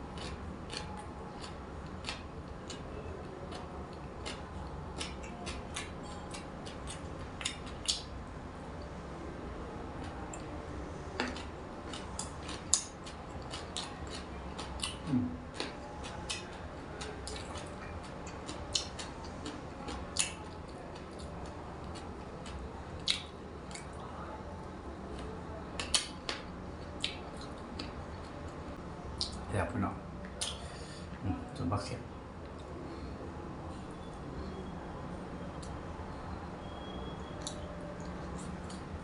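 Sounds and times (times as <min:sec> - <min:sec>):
chewing and mouth sounds: 0:00.1 - 0:08.1, 0:11.2 - 0:24.0, 0:25.1 - 0:29.5, 0:30.2 - 0:30.8.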